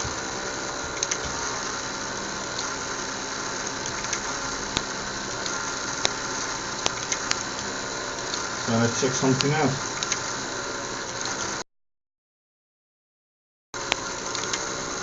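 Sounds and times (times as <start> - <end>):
small electric motors whirring: 0.0 - 11.6, 13.8 - 15.0
sharp clicks: 0.9 - 1.5, 3.6 - 6.2, 6.8 - 8.5, 9.3 - 10.3, 13.9 - 14.7.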